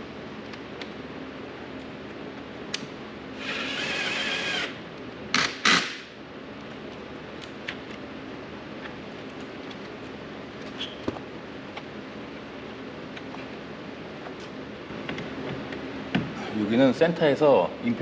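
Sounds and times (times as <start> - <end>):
power driver whining: 3.4 - 4.8.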